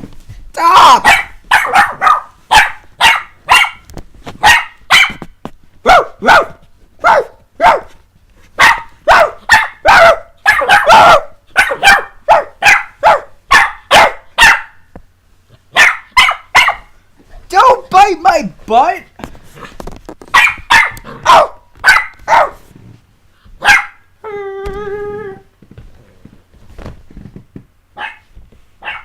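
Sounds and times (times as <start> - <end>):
puppy barking: 1.0 - 5.2, 5.8 - 8.0, 8.6 - 14.9, 15.7 - 17.0, 20.3 - 22.6, 23.6 - 24.1, 28.0 - 29.0.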